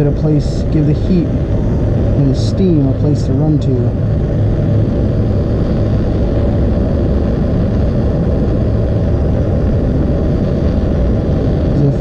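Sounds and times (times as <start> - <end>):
torch flame roaring: 0.0 - 12.0.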